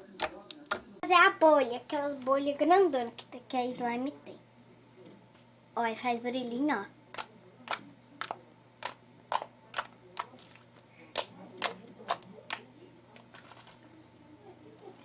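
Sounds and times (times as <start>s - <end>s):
slime clicking and popping: 7.1s - 10.4s.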